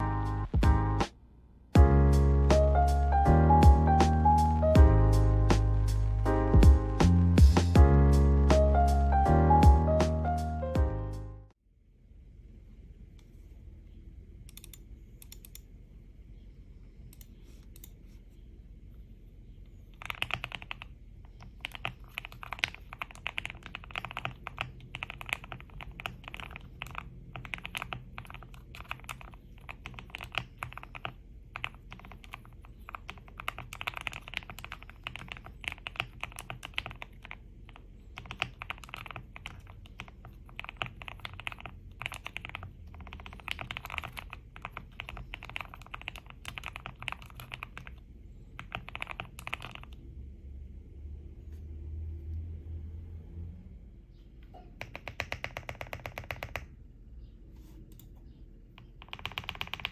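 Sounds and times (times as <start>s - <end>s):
mechanical keyboard typing: 19.9s - 48.0s, 48.6s - 50.0s, 54.8s - 56.7s, 58.8s - 59.9s.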